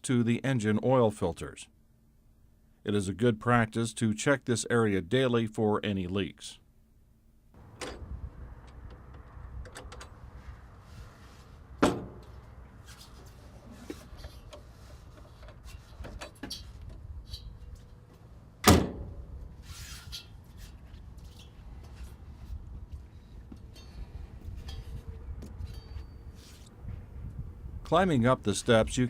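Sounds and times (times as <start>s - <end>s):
metal doors banging shut: 7.6s - 8.2s, 11.8s - 12.3s, 18.6s - 19.3s
steady low rumble: 7.6s - 15.1s, 15.8s - 29.0s.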